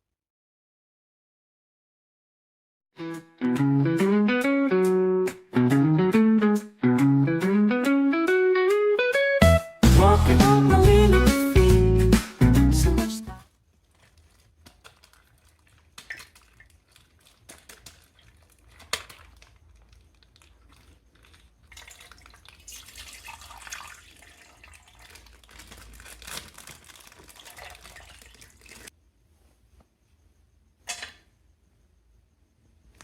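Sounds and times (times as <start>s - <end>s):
plastic bag crinkling: 13.3s - 28.9s
water trickling and dripping: 14.1s - 25.8s, 26.9s - 28.9s.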